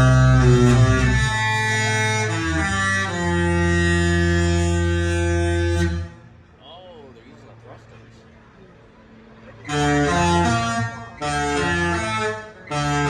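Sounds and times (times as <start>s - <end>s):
ship's melody horn playing a tune: 0.0s - 6.4s, 9.6s - 13.0s.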